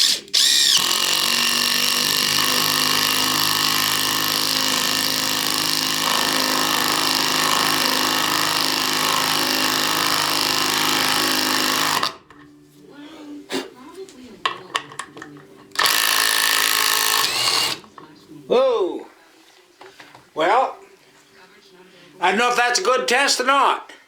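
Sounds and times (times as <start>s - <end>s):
impact driver hammering: 0.0s - 12.2s, 15.8s - 17.9s.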